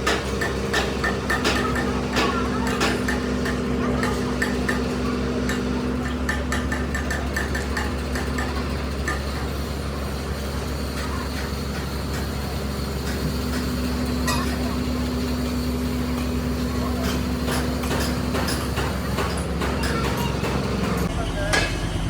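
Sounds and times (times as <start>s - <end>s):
engine idling: 0.0s - 22.0s.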